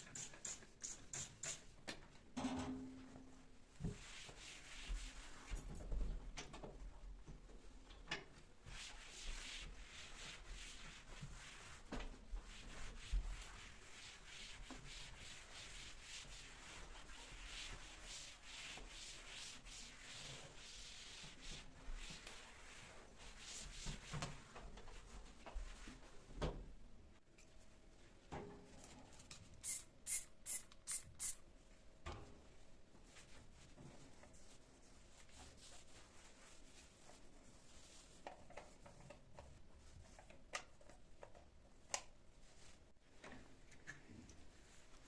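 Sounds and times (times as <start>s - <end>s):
scrubbing a surface: 3.9s - 5.6s, 8.6s - 26.1s, 33.0s - 39.2s
short hissing bursts: 29.6s - 31.4s.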